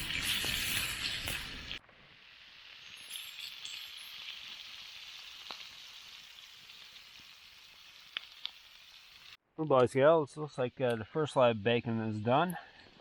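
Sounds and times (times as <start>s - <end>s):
bacon sizzling: 0.0s - 9.4s.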